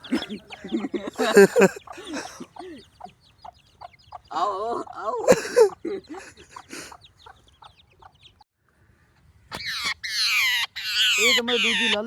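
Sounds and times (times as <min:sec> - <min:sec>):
chickens clucking: 0:00.0 - 0:08.4, 0:09.5 - 0:12.0
loud high-pitched squawks: 0:09.6 - 0:12.0.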